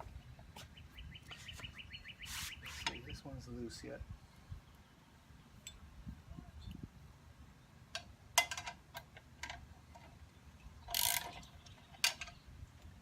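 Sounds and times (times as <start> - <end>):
ratchet wrench clicking: 10.9 - 11.5.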